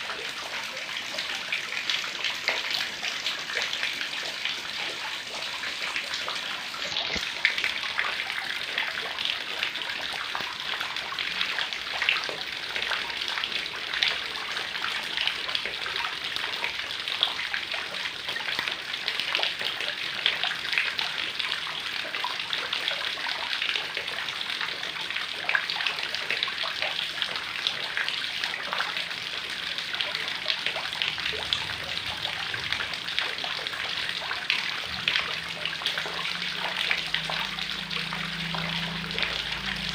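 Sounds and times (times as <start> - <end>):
heavy rain falling: 29.8 - 39.9.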